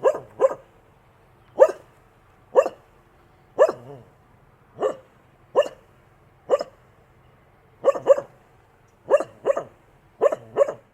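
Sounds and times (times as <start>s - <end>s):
dog barking: 0.0s - 0.7s, 1.6s - 1.9s, 2.5s - 2.8s, 3.6s - 4.1s, 4.8s - 5.8s, 6.5s - 6.8s, 7.8s - 8.4s, 9.1s - 10.9s.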